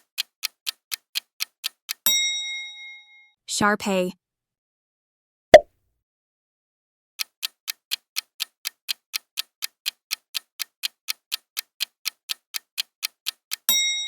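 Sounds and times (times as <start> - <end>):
clock ticking: 0.0 - 2.2, 7.2 - 14.0
bell ding: 2.1 - 3.3.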